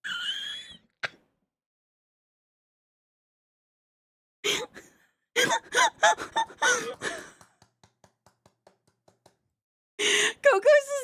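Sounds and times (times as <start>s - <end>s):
woman laughing: 5.4s - 7.4s.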